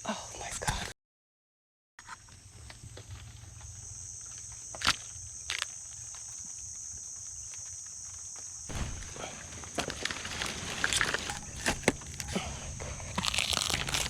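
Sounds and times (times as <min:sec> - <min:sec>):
crickets chirping: 0:02.0 - 0:14.0
faint low hum: 0:08.7 - 0:14.0.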